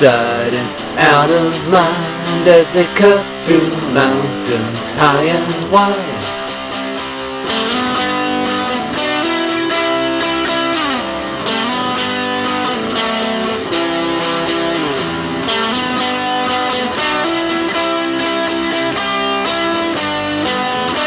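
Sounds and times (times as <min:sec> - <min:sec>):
person singing verses: 0:00.0 - 0:06.7.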